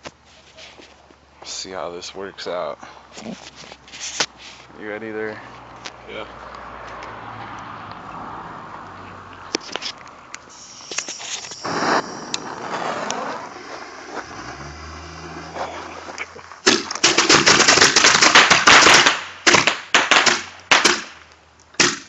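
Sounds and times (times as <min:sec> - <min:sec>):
bottle rocket hiss: 0:10.5 - 0:15.8
bottle rockets popping and banging: 0:16.6 - 0:22.0.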